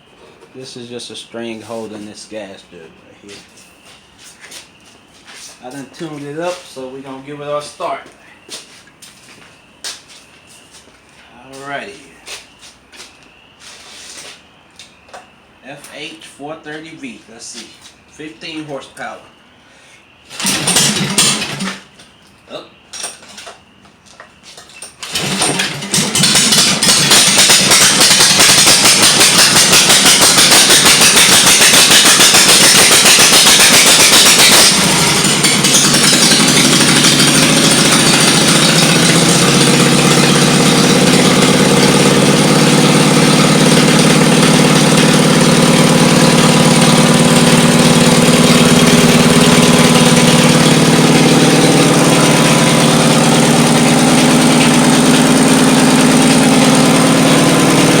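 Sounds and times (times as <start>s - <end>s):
lawnmower engine running: 20.3s - 21.9s, 25.0s - 58.0s.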